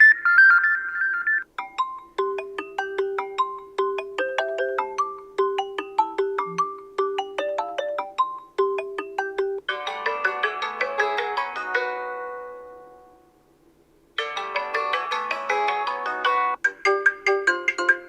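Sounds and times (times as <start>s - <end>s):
phone ringtone chimes: 0.3s - 12.0s.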